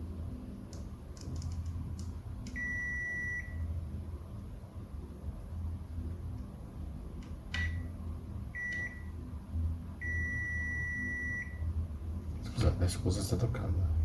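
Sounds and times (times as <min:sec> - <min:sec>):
low steady hum: 0:00.0 - 0:14.0
multimeter continuity beeps: 0:02.5 - 0:03.8, 0:07.5 - 0:09.2, 0:10.0 - 0:11.8.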